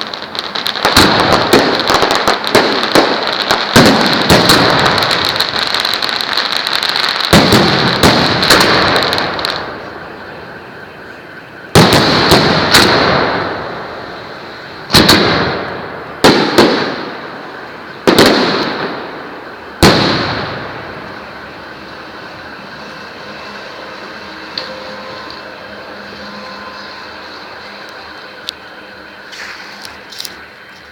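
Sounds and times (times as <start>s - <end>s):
firework bangs: 0.0s - 28.4s
firework crackling: 0.0s - 30.9s.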